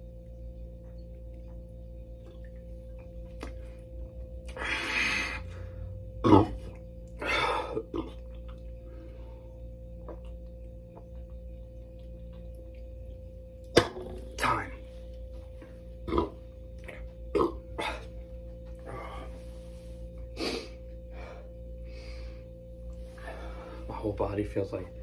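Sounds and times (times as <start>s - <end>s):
faint steady hum: 0.0s - 25.0s
sharp throat sound: 4.5s - 8.5s, 13.8s - 14.8s, 16.1s - 18.2s.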